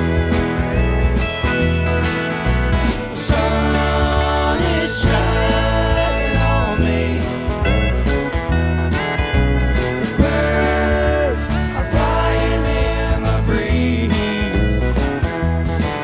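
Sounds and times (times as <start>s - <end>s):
live country band playing: 0.0s - 16.0s
person singing: 3.2s - 7.8s, 10.2s - 14.9s.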